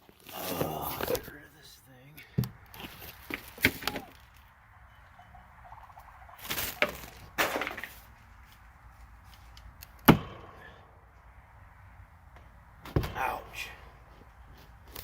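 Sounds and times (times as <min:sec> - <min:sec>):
rustling and scraping: 0:02.7 - 0:04.5, 0:06.4 - 0:09.8.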